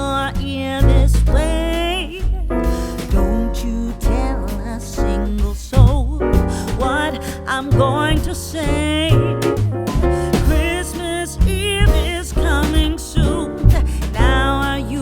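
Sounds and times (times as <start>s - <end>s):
bass line: 0.0s - 15.0s
piano chords: 0.0s - 15.0s
person singing with vibrato: 10.2s - 15.0s.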